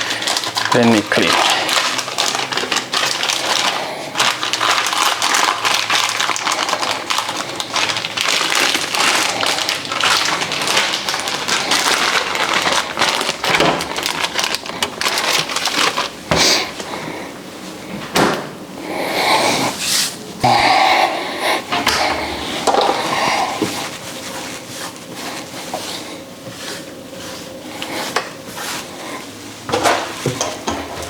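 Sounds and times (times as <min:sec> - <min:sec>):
frying pan sizzling and crackling: 0:00.0 - 0:16.2.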